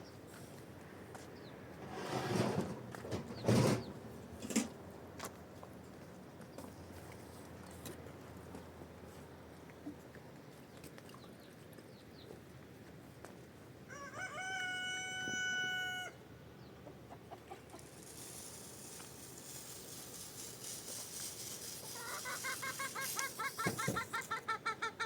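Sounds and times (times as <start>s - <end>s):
rooster crowing: 13.9s - 16.2s
chickens clucking rapidly: 16.8s - 18.0s, 21.4s - 25.0s.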